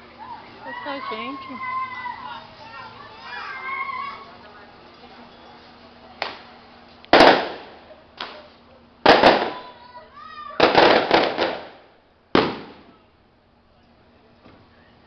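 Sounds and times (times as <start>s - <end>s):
fireworks bangs echoing: 7.1s - 9.9s, 10.6s - 13.0s.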